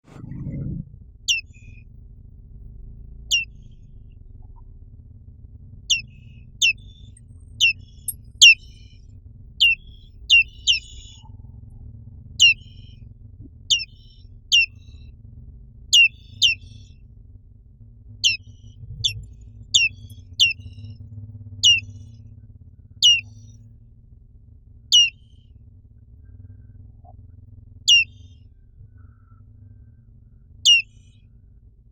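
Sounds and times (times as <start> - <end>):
faint low hum: 0.0 - 31.9
bird calling sharp notes: 1.3 - 1.5, 3.3 - 3.6, 5.9 - 7.0, 7.6 - 8.8, 9.6 - 11.2, 12.4 - 12.9, 13.7 - 14.8, 15.9 - 16.8, 18.2 - 20.9, 21.6 - 22.0, 23.0 - 23.4, 24.9 - 25.2, 27.9 - 28.2, 30.7 - 30.9.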